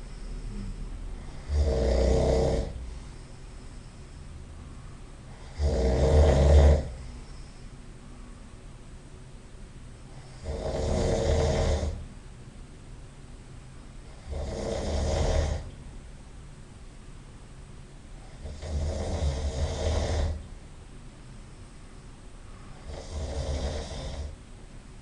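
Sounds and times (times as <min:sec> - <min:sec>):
quiet breathing: 0:00.0 - 0:08.6, 0:21.4 - 0:24.5
person snoring loudly: 0:00.1 - 0:02.8, 0:05.3 - 0:07.2, 0:10.1 - 0:12.0, 0:14.1 - 0:15.7, 0:18.3 - 0:20.4, 0:22.8 - 0:24.4.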